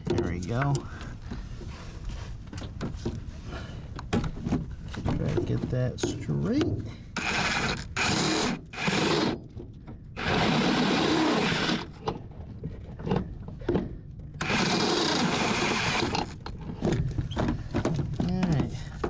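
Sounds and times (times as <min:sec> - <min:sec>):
power drill bursts: 0:07.2 - 0:09.4, 0:10.2 - 0:12.0, 0:14.4 - 0:16.4.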